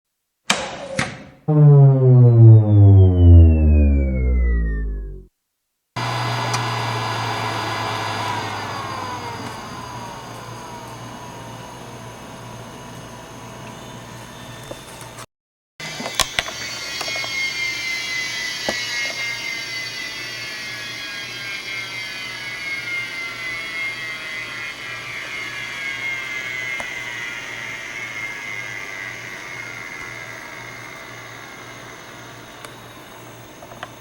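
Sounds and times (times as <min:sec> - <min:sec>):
computer whine sliding down: 0:01.5 - 0:05.3.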